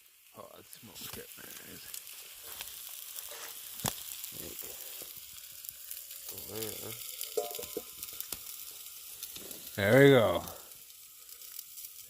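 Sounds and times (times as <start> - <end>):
meat sizzling on hot rock: 0.0 - 12.0.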